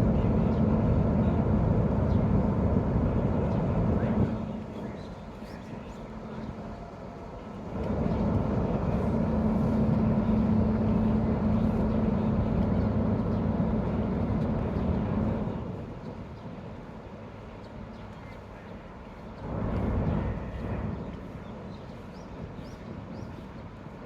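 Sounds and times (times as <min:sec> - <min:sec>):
ferry engines rumbling: 0:00.0 - 0:24.0.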